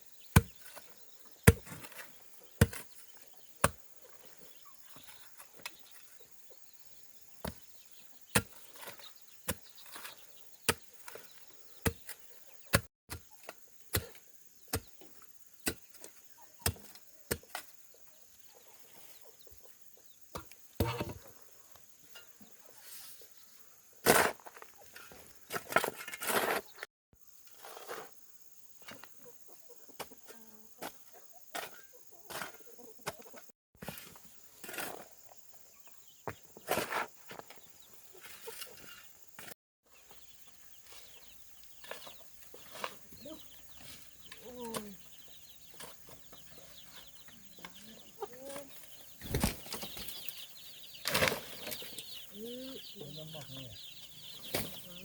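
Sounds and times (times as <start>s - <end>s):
chopping strikes on wood: 1.5s - 1.8s, 20.4s - 21.2s
fowl clucking: 47.4s - 50.2s.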